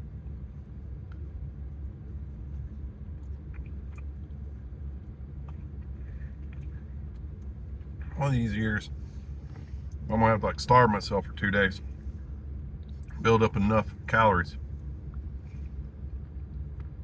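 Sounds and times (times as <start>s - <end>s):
steady low rumble: 0.0s - 17.0s
faint chewing with clicks: 0.2s - 8.1s.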